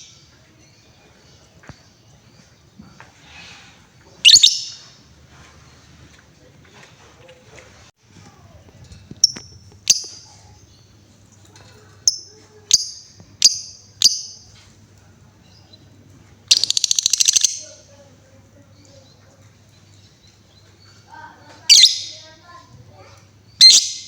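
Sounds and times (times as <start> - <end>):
lovebird rattling trill: 4.2 - 4.8, 9.2 - 10.4, 16.5 - 17.9
lovebird chirping: 4.2 - 5.0, 9.2 - 11.0, 12.0 - 14.6, 16.5 - 17.9, 21.7 - 22.3, 23.4 - 24.0.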